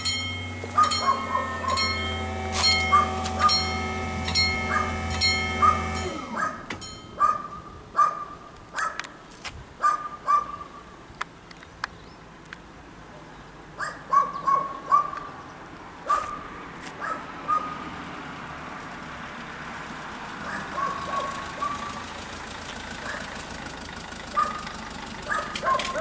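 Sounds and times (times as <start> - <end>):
low mechanical hum: 0.0 - 7.6
level crossing warning bells: 0.0 - 7.8, 20.6 - 26.0.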